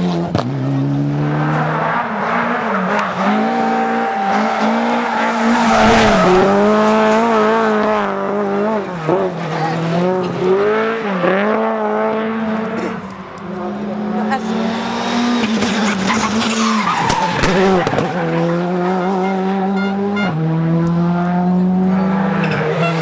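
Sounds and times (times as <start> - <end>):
rally car engine revving: 0.0 - 23.0
tyre noise: 21.7 - 23.0.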